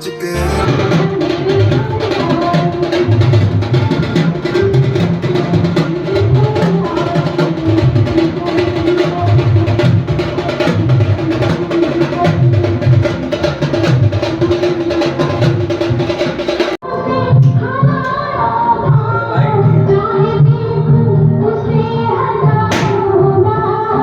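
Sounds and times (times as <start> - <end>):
instrumental pop music: 0.0 - 24.0
heavy drum beat: 0.4 - 16.8, 22.7 - 23.6.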